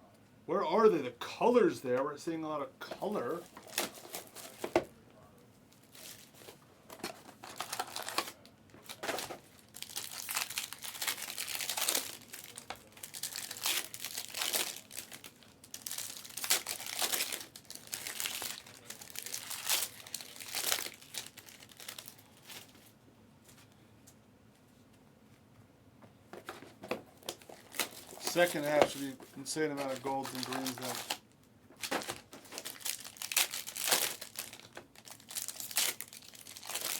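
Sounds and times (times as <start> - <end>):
foil wrappers crinkling and tearing: 3.0 - 4.8, 5.8 - 22.8, 27.2 - 36.9.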